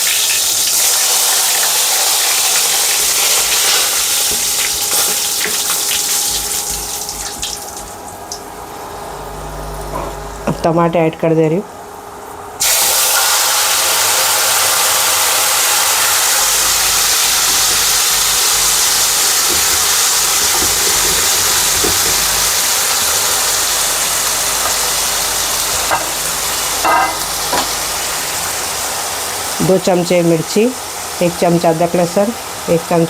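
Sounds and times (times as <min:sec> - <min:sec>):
food sizzling in hot oil: 0:00.0 - 0:08.1, 0:12.6 - 0:33.0
utensil knocking on pan: 0:17.4 - 0:22.5, 0:25.8 - 0:27.8.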